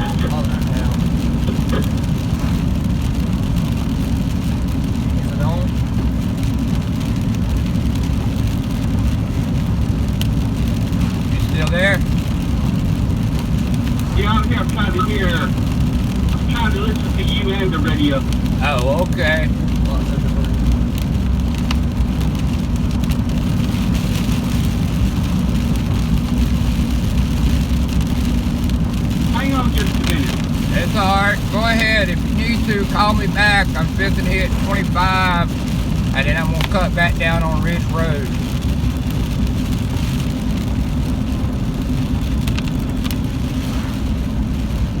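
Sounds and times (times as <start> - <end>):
car road and engine rumble: 0.0 - 45.0
rain hissing on car body: 0.0 - 45.0
light ticks: 10.1 - 10.8, 20.4 - 22.4.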